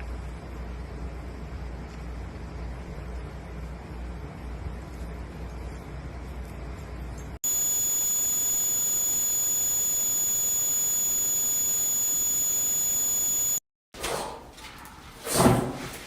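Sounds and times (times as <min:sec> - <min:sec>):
high-pitched electronic tone: 0:07.4 - 0:13.6.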